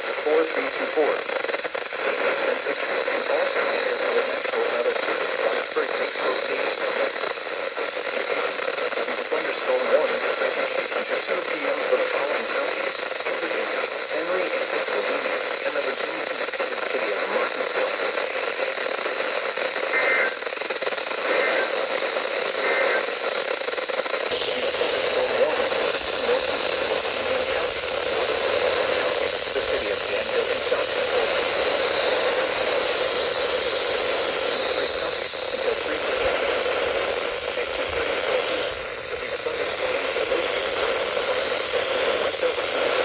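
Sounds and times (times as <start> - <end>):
radio static: 0.0 - 43.0.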